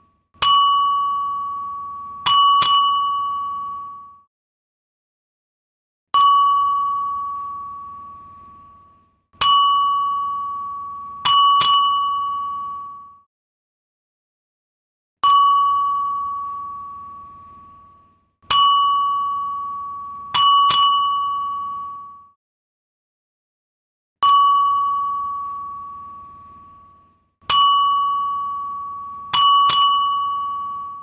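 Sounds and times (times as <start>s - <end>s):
service bell dings: 0.4s - 4.2s, 6.2s - 8.8s, 9.4s - 13.2s, 15.2s - 22.3s, 24.2s - 26.9s, 27.5s - 31.0s.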